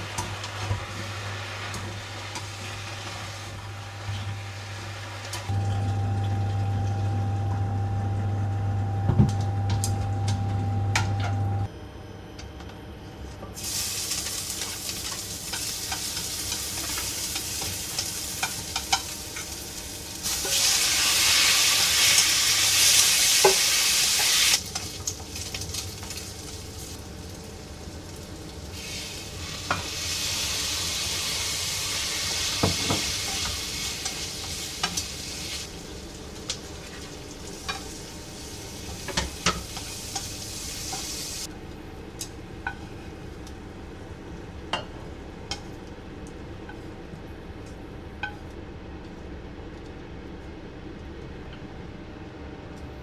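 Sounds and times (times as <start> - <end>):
food sizzling in a frying pan: 0.0 - 9.0, 13.6 - 41.5
appliance hum: 0.0 - 53.0.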